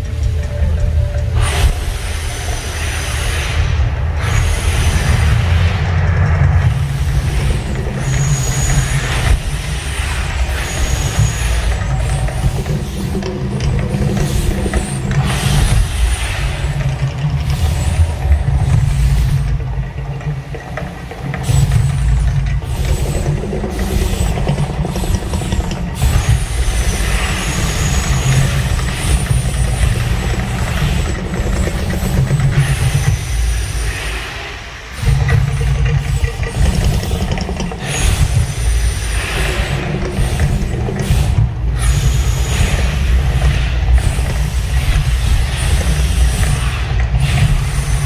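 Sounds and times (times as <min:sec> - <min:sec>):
deep rumbling: 0:00.0 - 0:48.0
hissing bursts: 0:21.4 - 0:48.0.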